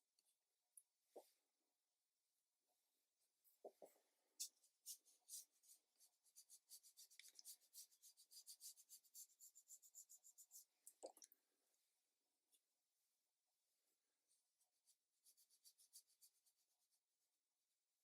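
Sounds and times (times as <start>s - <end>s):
brush strokes on paper: 4.4s - 10.8s, 14.3s - 17.4s.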